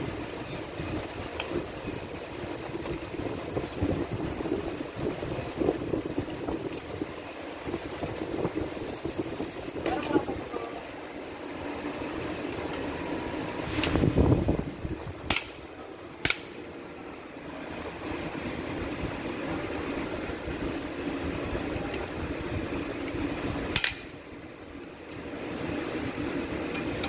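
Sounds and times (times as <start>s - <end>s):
steady mechanical hum: 0.0s - 27.0s
metallic clicks of tools: 16.2s - 16.6s.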